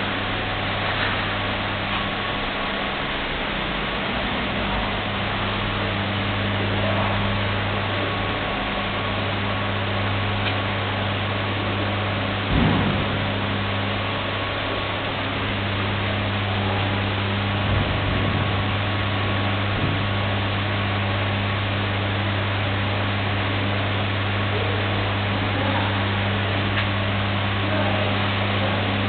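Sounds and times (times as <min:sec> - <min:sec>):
production line machinery humming: 0:00.0 - 0:29.0
machinery knock: 0:12.5 - 0:13.6, 0:17.5 - 0:18.7.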